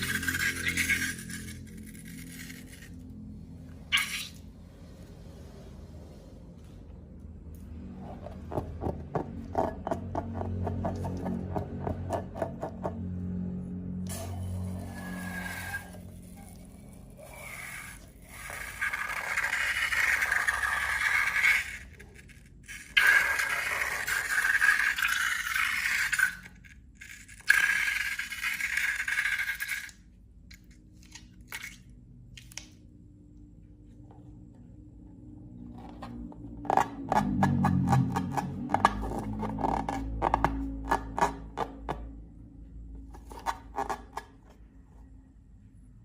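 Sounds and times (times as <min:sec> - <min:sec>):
scraping slime: 0:00.0 - 0:04.5, 0:14.2 - 0:31.8, 0:35.7 - 0:42.1, 0:43.0 - 0:44.6.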